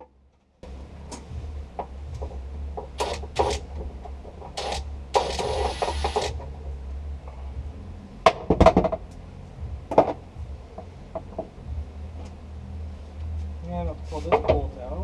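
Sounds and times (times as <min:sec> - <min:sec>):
power tool running: 0:03.0 - 0:03.6, 0:04.6 - 0:06.3.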